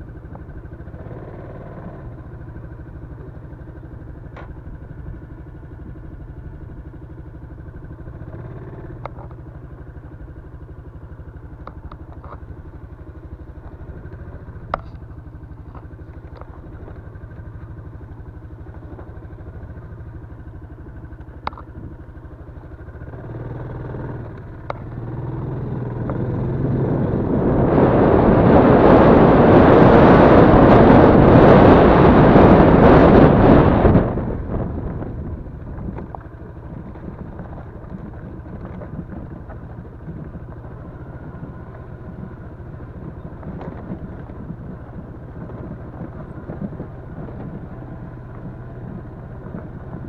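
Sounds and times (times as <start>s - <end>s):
engine knocks and clatter: 0.0s - 50.0s
motorcycle engine running: 0.0s - 50.0s
wind rushing on microphone: 25.4s - 50.0s.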